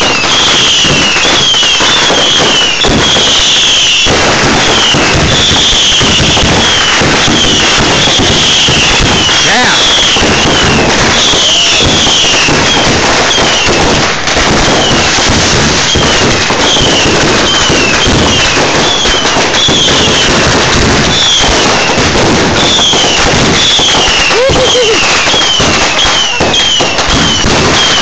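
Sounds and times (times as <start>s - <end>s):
falling firework whistles: 0.0s - 28.0s
fireworks crackling and popping: 0.0s - 28.0s.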